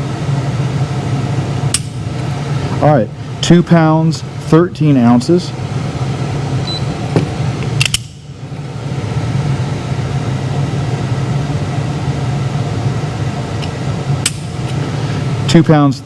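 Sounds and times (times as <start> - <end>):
low mechanical hum: 0.0 - 16.0.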